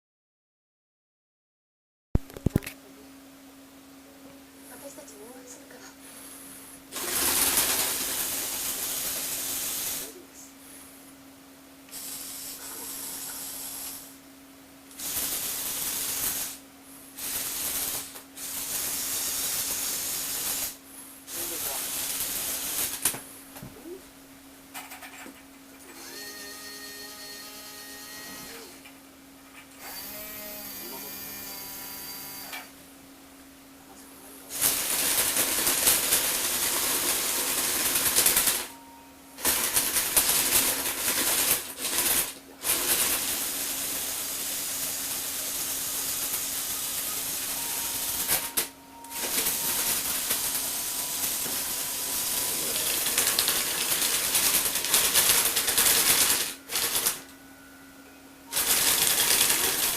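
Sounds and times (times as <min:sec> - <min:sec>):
small electric motors whining: 0:06.9 - 0:10.1, 0:11.9 - 0:14.2, 0:25.8 - 0:28.9, 0:29.8 - 0:32.7, 0:39.4 - 0:57.2, 0:58.5 - 0:59.9
loud rough gear-driven running: 0:52.5 - 0:57.2, 0:58.5 - 0:59.9.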